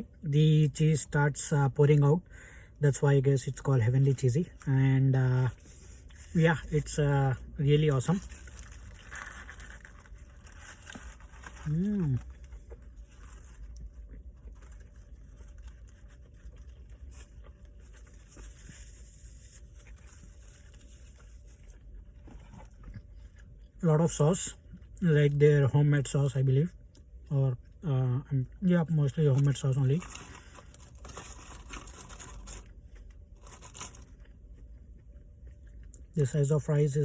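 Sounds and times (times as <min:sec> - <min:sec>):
steady low hum: 0:00.0 - 0:37.0
paper packaging rustling: 0:07.9 - 0:13.8, 0:29.4 - 0:34.3.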